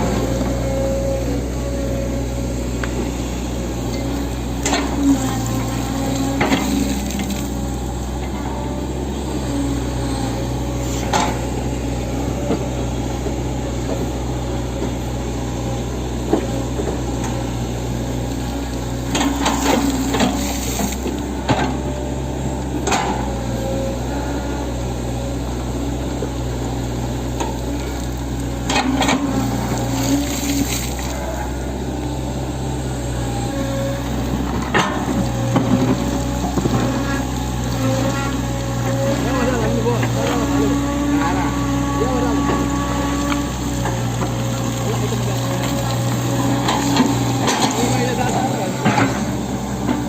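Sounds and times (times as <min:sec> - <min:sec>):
excavator diesel engine droning: 0:00.0 - 0:50.0.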